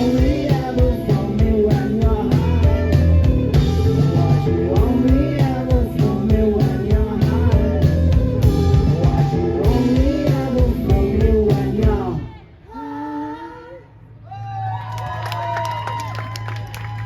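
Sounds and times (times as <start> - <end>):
drum kit: 0.0 - 12.2
electric guitar: 0.0 - 12.2
bass guitar: 0.0 - 12.3.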